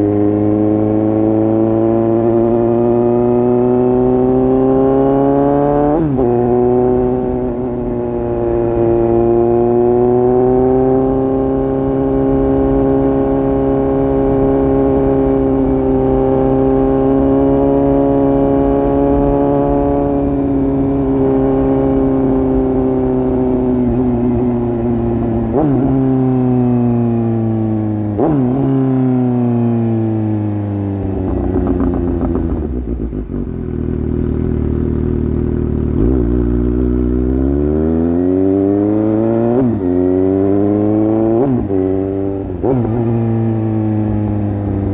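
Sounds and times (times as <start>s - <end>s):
motorcycle engine running: 0.0s - 44.9s.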